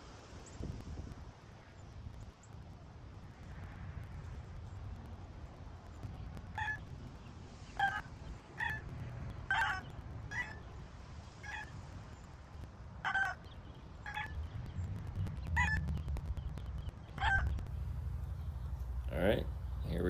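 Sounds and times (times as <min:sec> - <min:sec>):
low steady rumble: 0:14.0 - 0:20.0
chickens clucking: 0:17.2 - 0:20.0.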